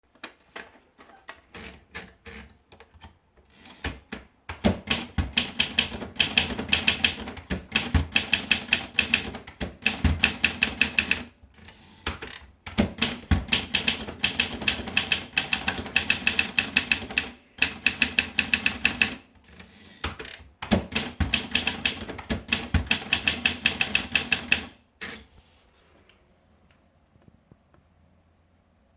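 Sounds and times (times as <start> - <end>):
typewriter keys clacking: 4.8 - 11.3, 12.7 - 19.2, 20.3 - 24.8.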